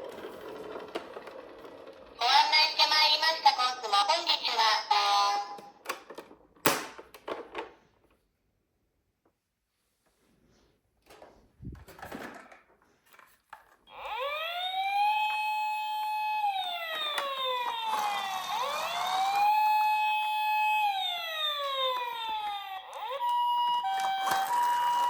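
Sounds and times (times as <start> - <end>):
toy siren wailing: 13.9 - 25.0
toy being handled: 16.2 - 20.8.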